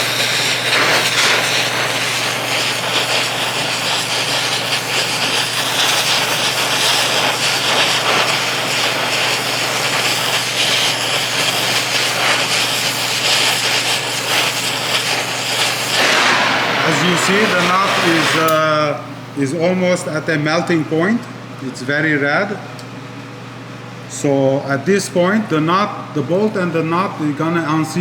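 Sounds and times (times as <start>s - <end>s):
gas torch flame hissing: 0.0s - 19.0s.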